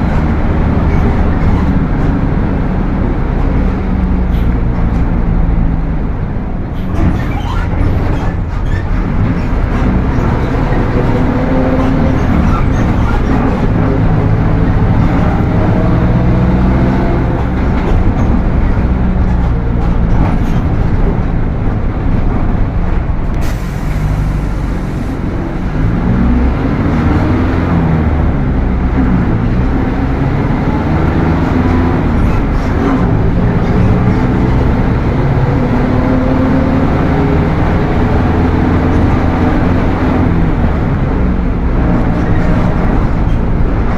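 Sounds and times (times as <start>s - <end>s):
bus diesel engine: 0.0s - 43.9s.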